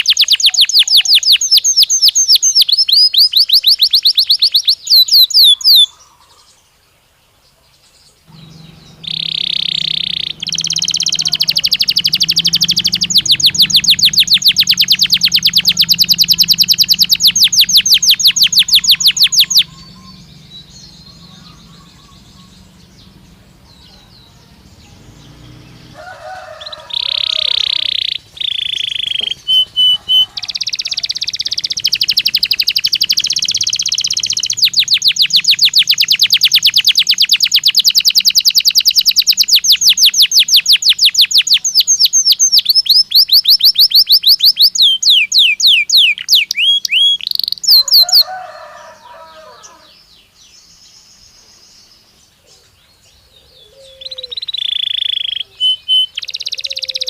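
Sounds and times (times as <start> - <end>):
canary singing: 0.0 - 6.4, 8.2 - 57.0.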